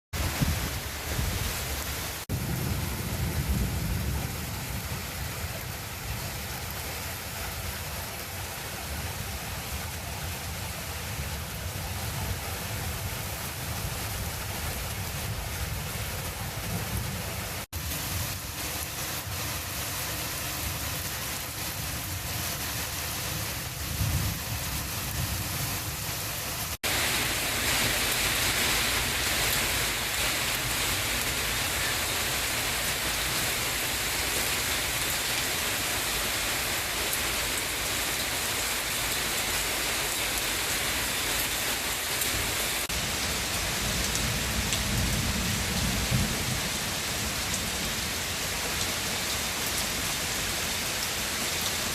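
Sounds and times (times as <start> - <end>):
heavy rain pouring: 0.1 - 51.9
low thunder rumbles: 2.3 - 5.0.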